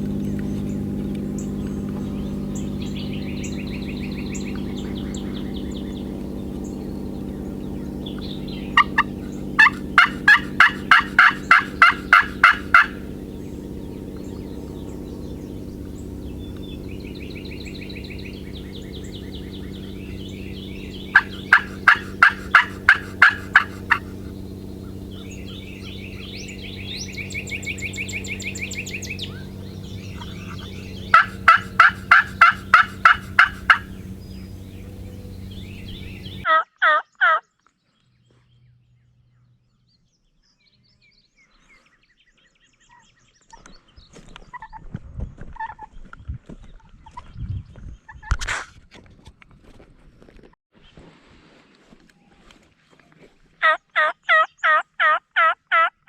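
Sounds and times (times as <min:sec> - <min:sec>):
plane droning overhead: 0:00.0 - 0:36.5
wild turkey yelping: 0:08.4 - 0:13.3, 0:20.8 - 0:37.4, 0:53.6 - 0:55.9.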